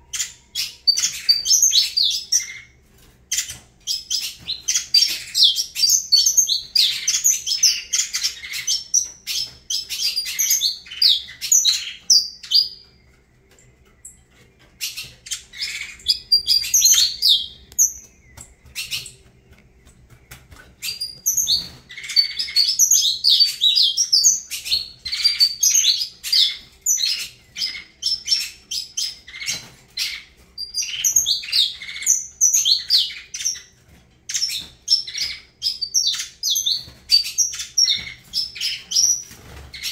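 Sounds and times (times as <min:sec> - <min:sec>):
finch singing chirps and trills: 0:00.0 - 0:39.9.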